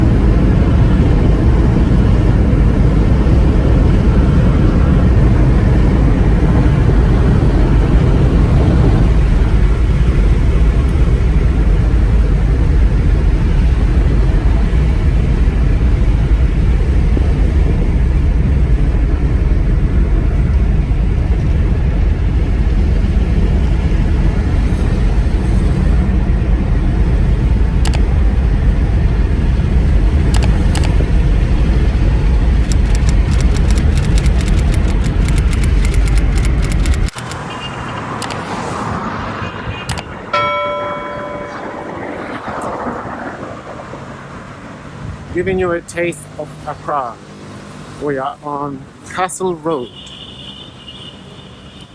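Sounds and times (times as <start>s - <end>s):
road and wind noise: 0.0s - 51.9s
quick faint clicks: 27.8s - 28.1s, 30.3s - 31.1s, 32.6s - 37.4s, 38.2s - 38.6s.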